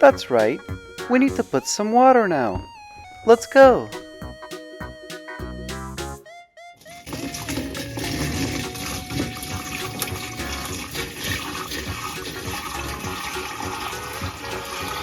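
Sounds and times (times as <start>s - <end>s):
water pouring into fish tank: 7.0s - 15.0s.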